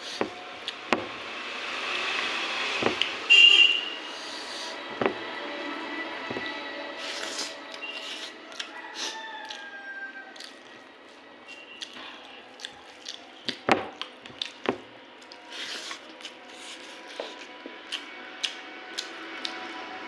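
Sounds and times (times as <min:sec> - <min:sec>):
wet chewing and smacking: 0:00.0 - 0:01.3, 0:07.2 - 0:19.8.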